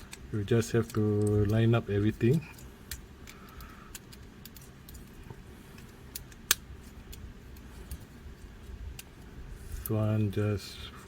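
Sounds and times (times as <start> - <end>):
toy parts clicking: 0.0 - 5.2, 5.8 - 8.1.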